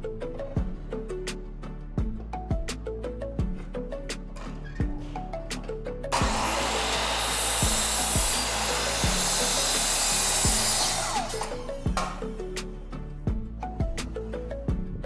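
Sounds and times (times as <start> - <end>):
background music with steady beat: 0.0 - 15.0
power tool cutting wood: 6.1 - 12.7.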